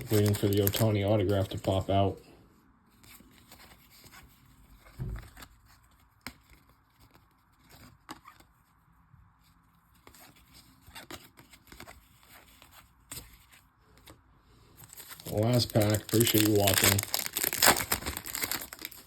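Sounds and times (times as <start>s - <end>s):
cards scraping: 0.0s - 1.8s, 14.8s - 19.0s
soft thump: 5.0s - 5.4s.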